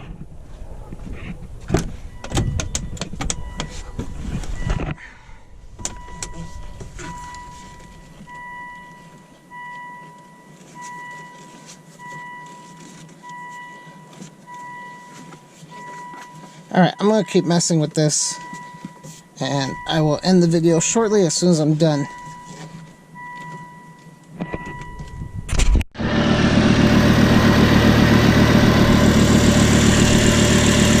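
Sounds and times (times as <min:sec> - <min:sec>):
car warning chime beeping: 0:02.1 - 0:04.0, 0:05.8 - 0:25.5.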